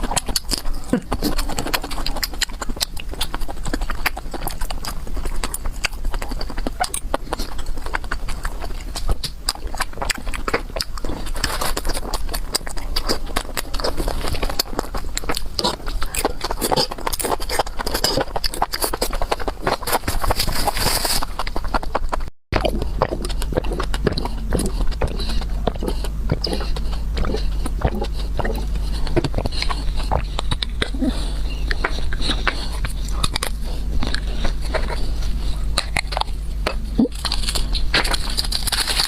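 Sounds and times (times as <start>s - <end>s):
person biting and chewing food: 0.0s - 39.0s
steady low hum: 0.0s - 39.0s.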